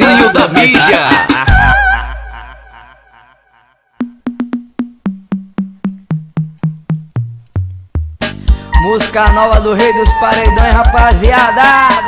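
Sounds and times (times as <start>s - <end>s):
drum machine tom fill: 4.0s - 12.0s.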